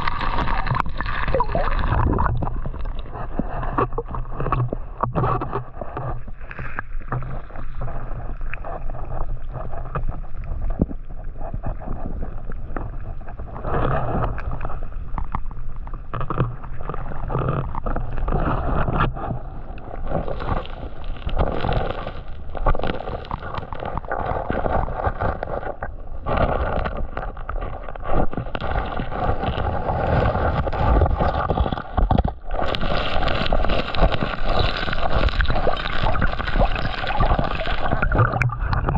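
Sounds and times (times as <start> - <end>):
creek water splashing: 0.0 - 3.3, 32.6 - 38.9
gravel swished in water: 0.0 - 38.9.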